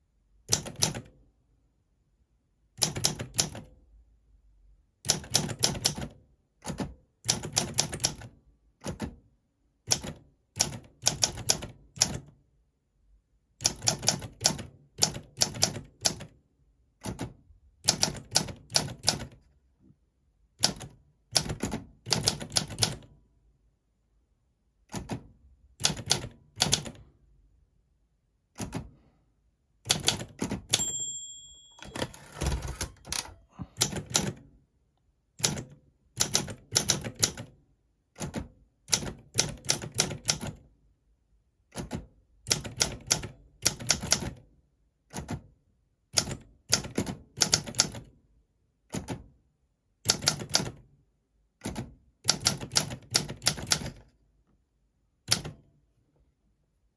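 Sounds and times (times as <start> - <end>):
typewriter carriage return: 30.0 - 34.3
typewriter margin bell: 30.7 - 33.5.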